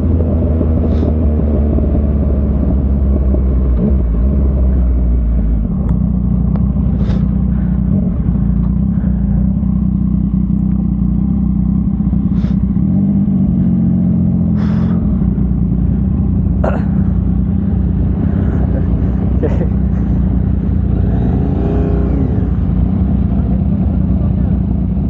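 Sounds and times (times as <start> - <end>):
motorcycle engine running: 0.0 - 25.0
short hisses: 7.0 - 7.4, 12.3 - 12.7, 14.6 - 15.0.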